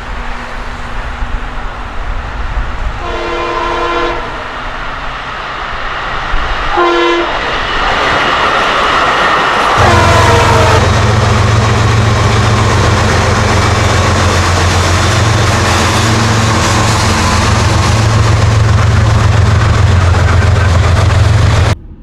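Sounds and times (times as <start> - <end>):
train rumbling over rails: 0.0 - 22.0
locomotive horn: 2.9 - 4.8, 6.7 - 7.6, 9.6 - 21.8
deep diesel engine drone: 7.2 - 22.0.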